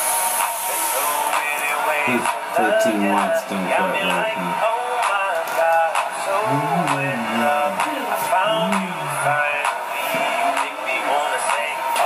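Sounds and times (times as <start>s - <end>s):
pop music with singing: 0.0s - 12.0s.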